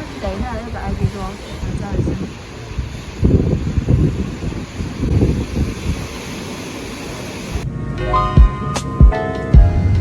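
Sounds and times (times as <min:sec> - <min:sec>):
wind rushing on microphone: 0:00.0 - 0:08.0
low rumble: 0:07.2 - 0:10.0.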